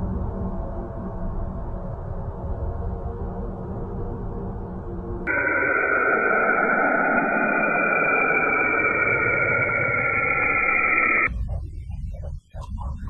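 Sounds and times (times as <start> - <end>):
rushing hiss: 5.3 - 11.3
steady high whine: 5.3 - 13.0.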